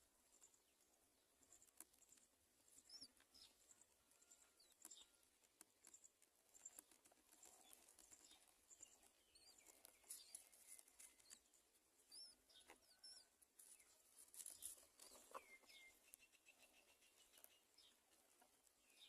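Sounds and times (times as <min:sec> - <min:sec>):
faint high bird chirps: 0:01.4 - 0:18.0, 0:18.8 - 0:19.0
scratchy rustling and clicks: 0:04.6 - 0:11.6, 0:13.6 - 0:15.6.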